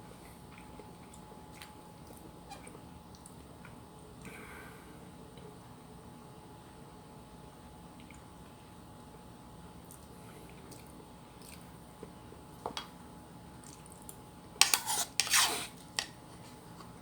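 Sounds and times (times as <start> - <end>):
spoon scraping on a plate: 14.6 - 15.7.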